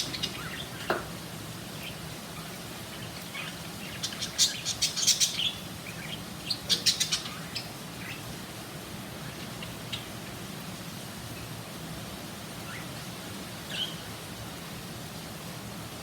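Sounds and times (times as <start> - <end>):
budgerigars chirping: 0.0 - 0.9, 1.8 - 8.3.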